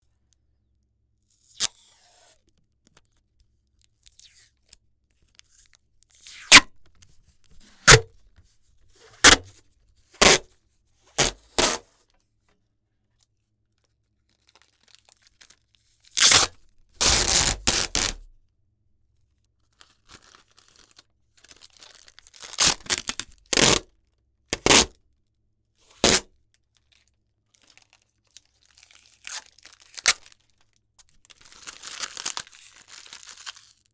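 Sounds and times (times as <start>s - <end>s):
packaging tape ripping: 7.7s - 8.1s, 9.1s - 9.5s, 10.2s - 10.4s, 11.2s - 11.8s, 16.2s - 18.3s, 22.4s - 23.8s, 24.6s - 24.9s, 26.0s - 26.3s, 29.2s - 30.4s, 31.4s - 33.7s.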